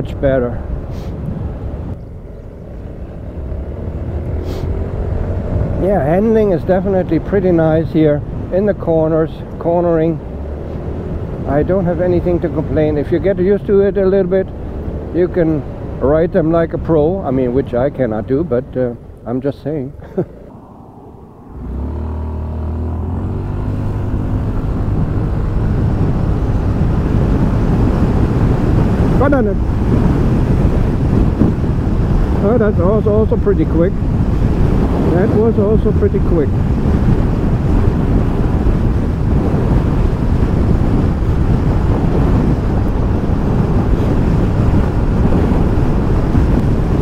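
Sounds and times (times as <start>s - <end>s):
road noise: 0.0s - 47.0s
wind noise: 0.0s - 47.0s
scooter engine accelerating: 20.3s - 29.2s.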